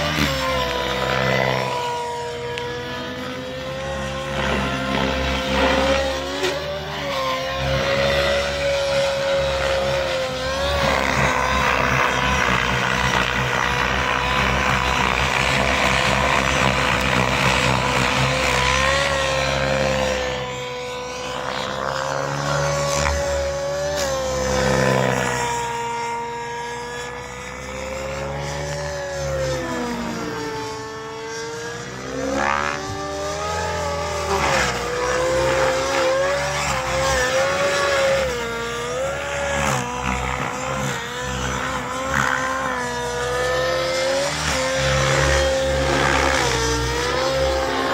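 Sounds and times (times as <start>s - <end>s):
rc helicopter engine at high revs: 0.0s - 47.9s.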